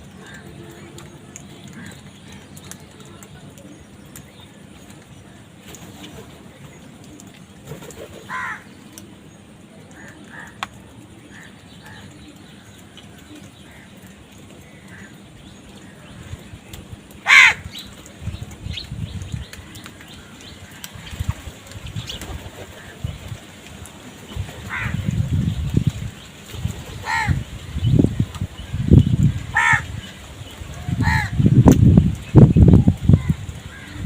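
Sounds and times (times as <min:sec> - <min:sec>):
crows cawing: 0:08.3 - 0:08.7, 0:10.0 - 0:10.7, 0:13.6 - 0:15.2, 0:17.2 - 0:17.8, 0:24.7 - 0:25.0, 0:27.0 - 0:27.4, 0:29.4 - 0:29.9, 0:30.8 - 0:31.4, 0:33.2 - 0:34.0.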